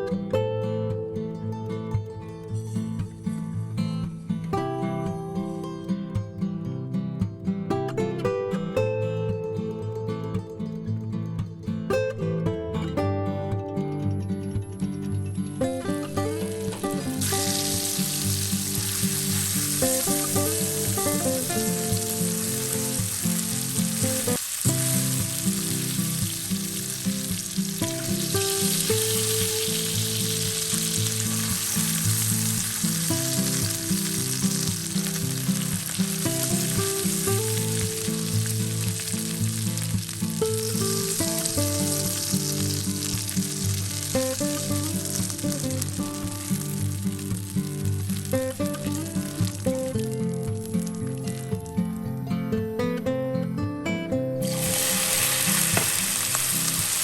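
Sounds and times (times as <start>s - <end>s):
soft background music: 12.0s - 57.0s
food sizzling in hot oil: 15.6s - 52.0s, 54.4s - 57.0s.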